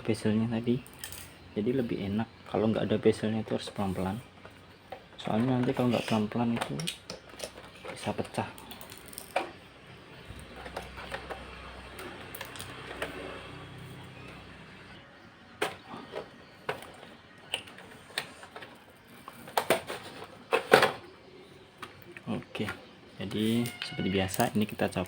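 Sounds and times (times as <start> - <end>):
plastic computer parts clicking: 4.4 - 9.6, 10.3 - 13.3, 21.8 - 25.0.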